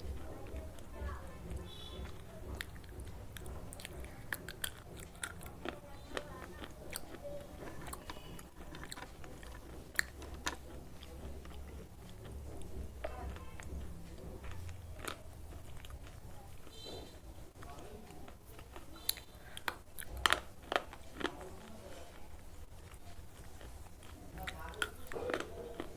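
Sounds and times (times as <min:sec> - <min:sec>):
pencils crunching between teeth: 0:02.6 - 0:16.8.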